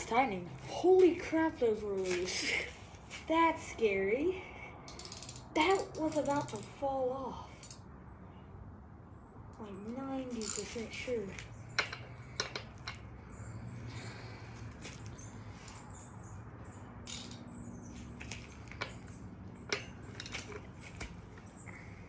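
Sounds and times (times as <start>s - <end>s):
tools clicking and tapping: 11.8s - 13.1s.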